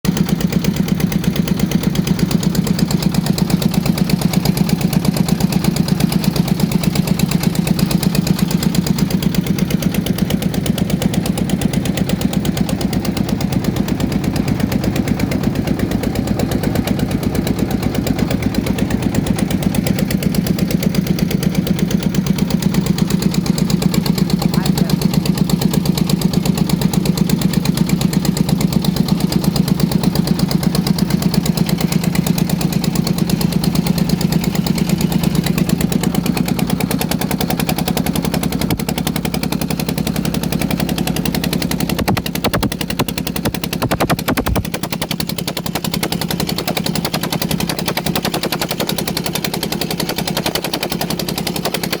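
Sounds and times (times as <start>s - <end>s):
boat engine chugging: 0.1s - 52.0s
loud knocks: 42.0s - 44.8s.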